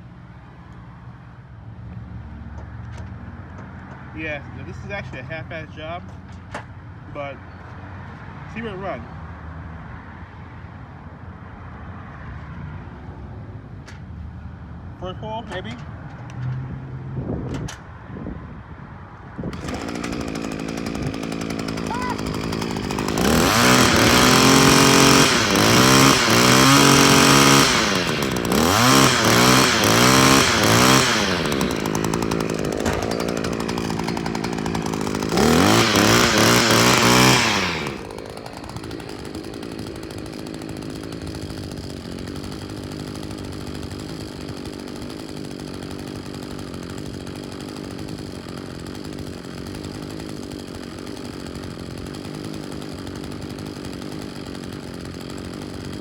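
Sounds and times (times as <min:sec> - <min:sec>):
string trimmer engine revving: 0:19.5 - 0:56.0.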